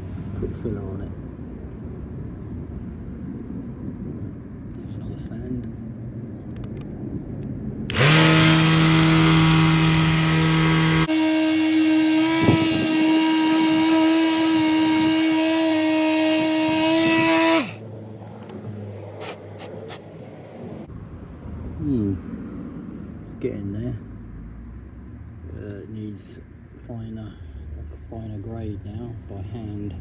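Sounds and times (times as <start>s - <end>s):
electric sander whining: 7.9s - 17.8s.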